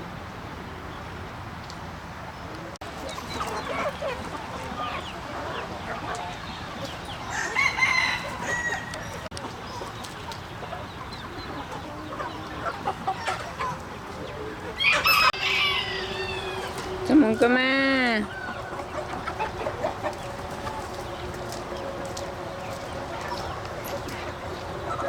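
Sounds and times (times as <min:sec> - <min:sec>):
chickens clucking: 0:01.6 - 0:25.0
rooster crowing: 0:07.2 - 0:09.2, 0:14.8 - 0:19.6.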